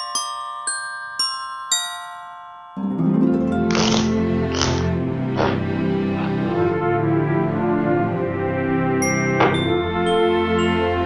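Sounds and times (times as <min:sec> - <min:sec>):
sustained orchestral chords: 0:02.8 - 0:11.0.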